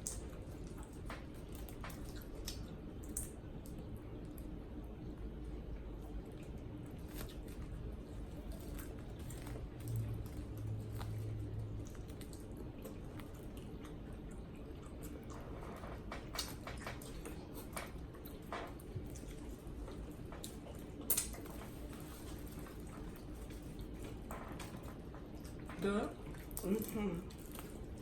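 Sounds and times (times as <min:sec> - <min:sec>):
lip smacks: 0:00.0 - 0:03.7, 0:16.2 - 0:24.2
low hum: 0:00.0 - 0:28.0
wet chewing and eating: 0:00.0 - 0:28.0.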